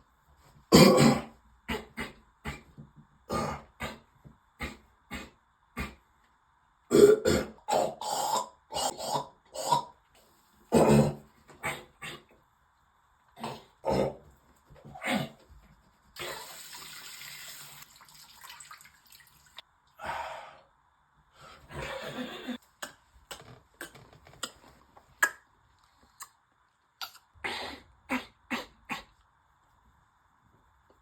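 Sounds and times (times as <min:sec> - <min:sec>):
person coughing: 0:00.7 - 0:01.3
person clearing throat: 0:00.7 - 0:02.7, 0:06.9 - 0:09.9, 0:10.7 - 0:12.2
person spitting: 0:04.6 - 0:06.0, 0:27.0 - 0:29.2
tap water running: 0:16.2 - 0:19.7.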